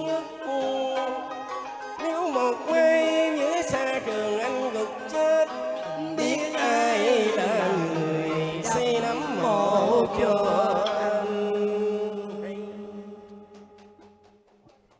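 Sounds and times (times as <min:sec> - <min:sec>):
ornamented vocal with vibrato: 0:00.0 - 0:14.3
sustained instrumental accompaniment: 0:00.0 - 0:14.6.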